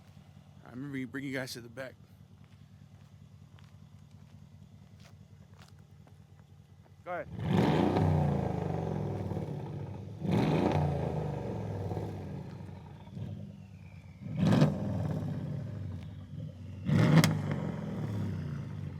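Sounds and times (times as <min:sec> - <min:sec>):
engine idling deeply: 0:00.0 - 0:07.4
car exhaust revving: 0:07.2 - 0:18.9.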